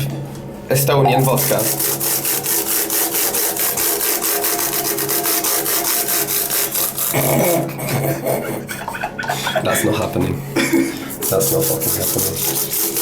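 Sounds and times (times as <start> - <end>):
scrubbing on a laptop keyboard: 1.3 - 7.6, 11.1 - 13.0.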